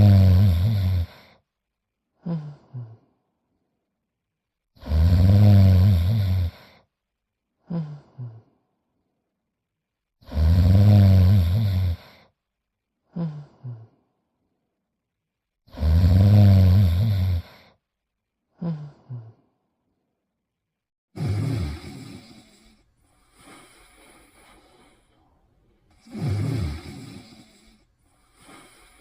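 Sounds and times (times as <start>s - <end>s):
cartoon snoring: 0.0s - 1.4s, 2.2s - 3.1s, 4.8s - 6.8s, 7.6s - 8.6s, 10.2s - 12.3s, 13.1s - 14.0s, 15.7s - 17.8s, 18.5s - 19.5s, 21.1s - 29.0s.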